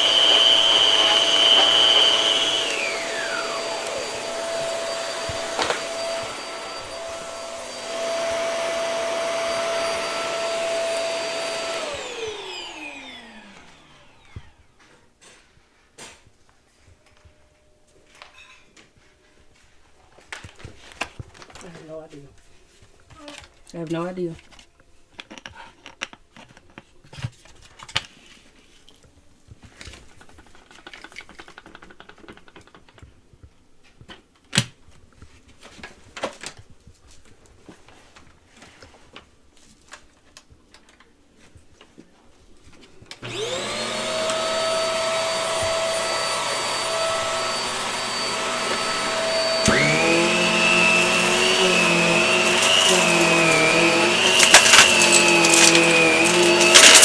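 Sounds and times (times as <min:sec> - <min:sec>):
vacuum cleaner whining: 0:00.0 - 0:15.0, 0:43.1 - 0:57.0.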